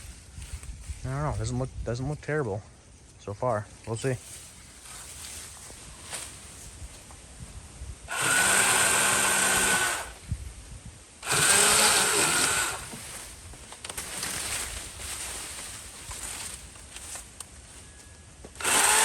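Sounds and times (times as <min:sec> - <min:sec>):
pole saw cutting branch: 0:08.1 - 0:10.2, 0:11.2 - 0:15.0, 0:18.5 - 0:19.0.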